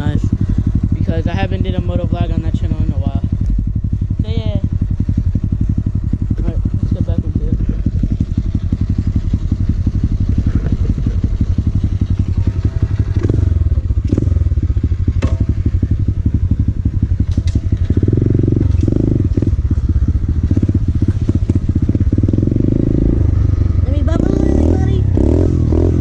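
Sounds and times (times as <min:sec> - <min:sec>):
motorcycle engine revving: 0:00.0 - 0:26.0
sharp knocks: 0:15.1 - 0:15.8.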